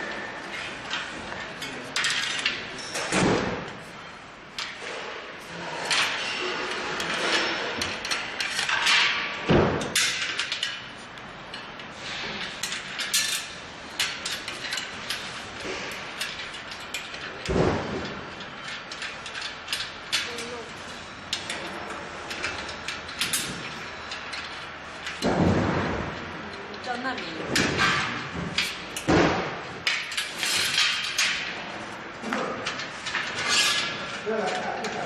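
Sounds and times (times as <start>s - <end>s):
hand tools clicking and rattling: 9.8s - 25.4s.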